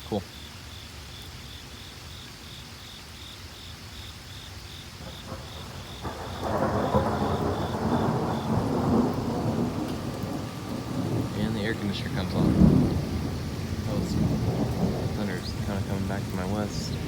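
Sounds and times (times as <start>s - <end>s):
steady rain: 0.0s - 17.0s
thunder rumbling: 5.0s - 17.0s.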